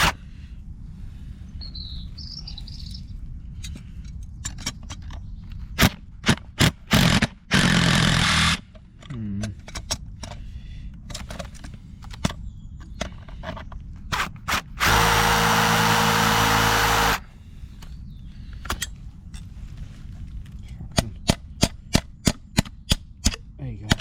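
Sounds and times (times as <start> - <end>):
clicks and knocks of handling tools: 3.6 - 5.6
cordless drill running: 14.5 - 17.2.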